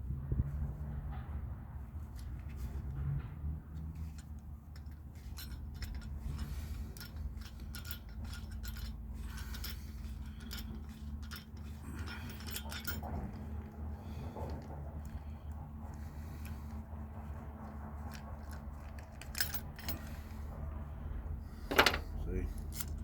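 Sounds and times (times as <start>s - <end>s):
small metal clinks and clicks: 4.0s - 16.6s, 18.0s - 20.3s, 22.6s - 23.0s.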